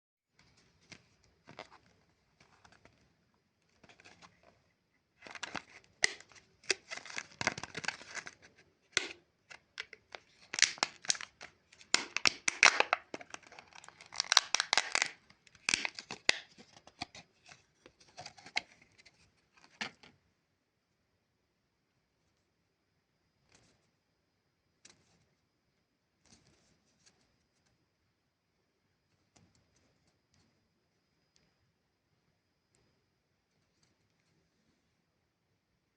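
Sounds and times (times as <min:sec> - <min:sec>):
lollipop wrapper crinkling: 0:05.2 - 0:17.2.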